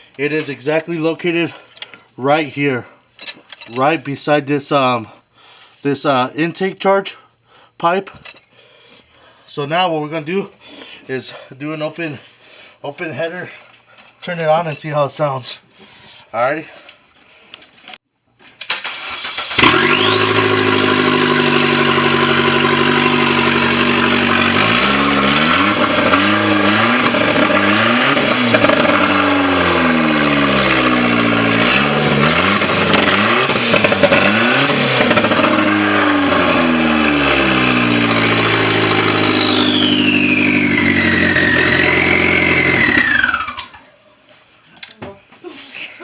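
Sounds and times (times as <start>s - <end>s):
car engine revving: 18.9s - 43.7s
high turbo whine: 19.5s - 43.8s.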